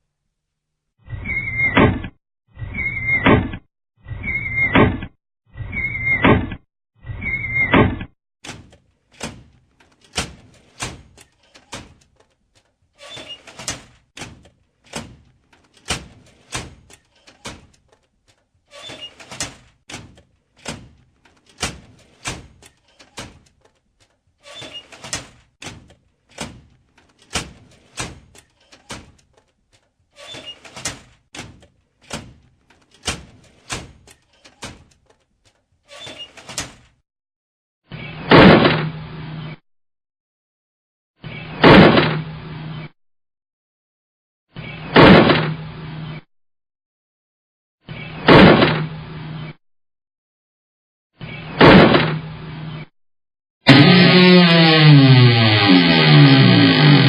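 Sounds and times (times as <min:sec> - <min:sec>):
door lock clicking and knocking: 0:07.8 - 0:12.4, 0:13.4 - 0:18.1, 0:19.2 - 0:23.8, 0:24.9 - 0:29.5, 0:30.6 - 0:35.2
door rattling: 0:08.4 - 0:12.4, 0:13.0 - 0:18.1, 0:18.7 - 0:23.8, 0:24.4 - 0:29.5, 0:30.2 - 0:35.2, 0:35.9 - 0:37.0.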